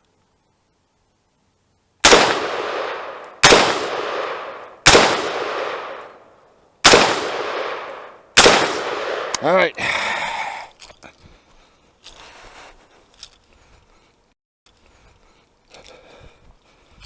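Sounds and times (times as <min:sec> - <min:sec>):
rifle shots with echo: 0:02.0 - 0:09.5.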